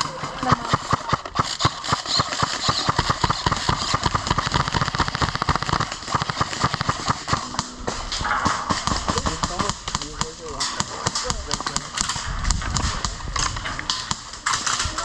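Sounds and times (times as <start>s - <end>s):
airsoft guns firing in bursts: 0.0s - 15.0s.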